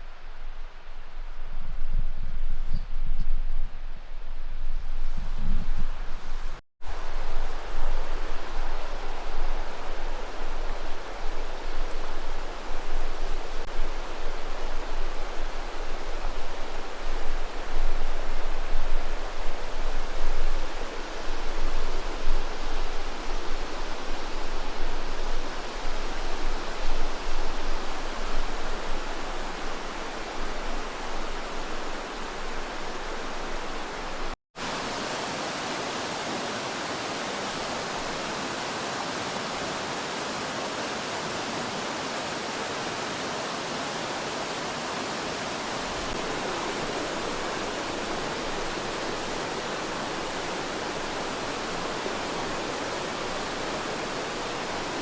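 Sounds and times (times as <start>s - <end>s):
river rushing: 28.9s - 55.0s.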